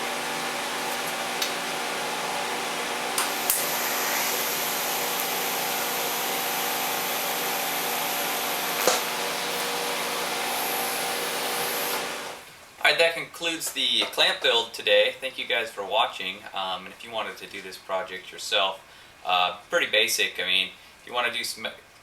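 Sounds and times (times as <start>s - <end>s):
power tool whirring: 3.2s - 12.4s.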